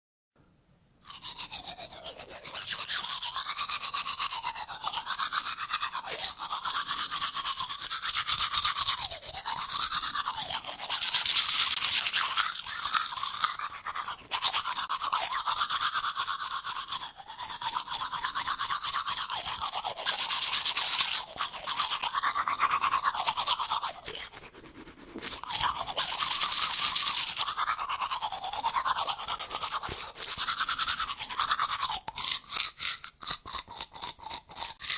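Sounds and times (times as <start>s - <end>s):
toothbrush scrubbing teeth: 1.0s - 34.9s.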